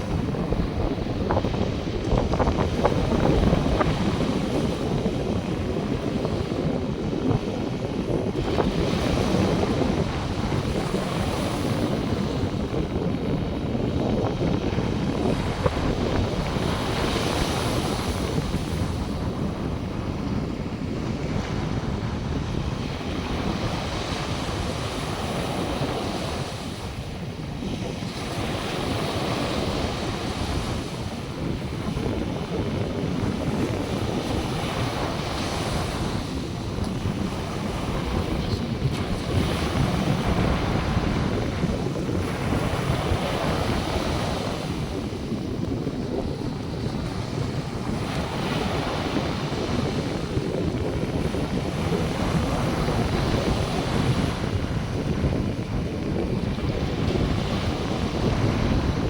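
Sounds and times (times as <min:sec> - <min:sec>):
surf washing on shore: 0:00.0 - 0:59.0
wind on microphone: 0:00.0 - 0:59.0.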